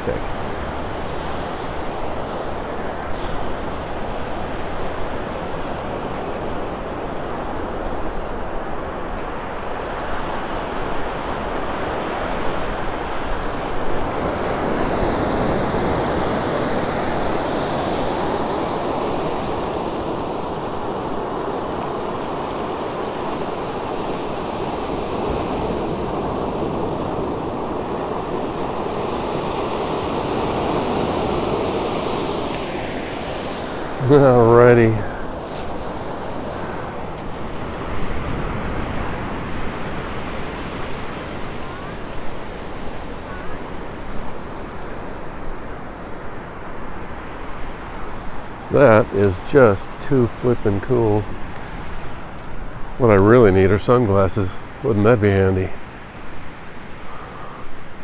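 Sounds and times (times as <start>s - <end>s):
waves breaking on beach: 0.0s - 58.0s
wind on microphone: 0.0s - 58.0s.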